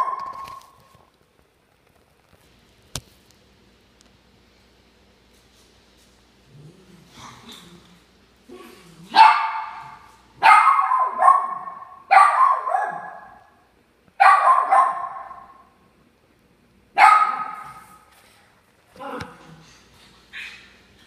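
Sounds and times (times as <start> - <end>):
dog barking: 0.0 - 0.6, 9.1 - 13.5, 14.2 - 15.6, 17.0 - 17.9.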